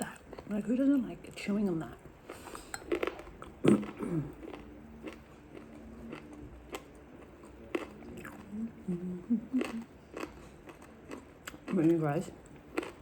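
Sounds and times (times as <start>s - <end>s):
chewing chicken bone crunches: 2.3s - 8.5s, 9.5s - 13.0s.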